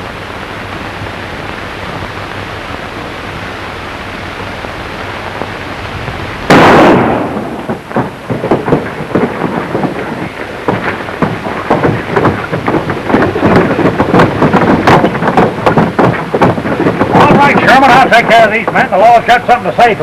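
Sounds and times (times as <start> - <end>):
old film soundtrack hiss: 0.0 - 20.0
loud gunshot: 6.5 - 9.3
irregular short knocks: 7.3 - 19.0.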